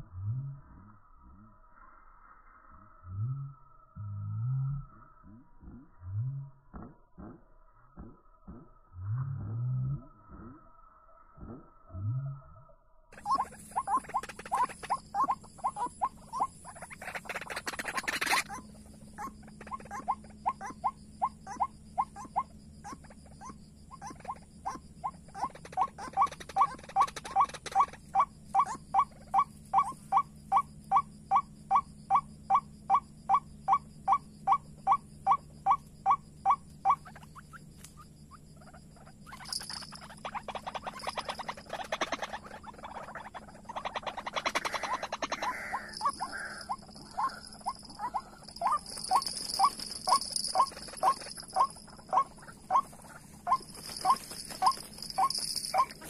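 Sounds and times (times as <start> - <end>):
bird calling sharp notes: 13.2 - 38.0, 38.6 - 56.0.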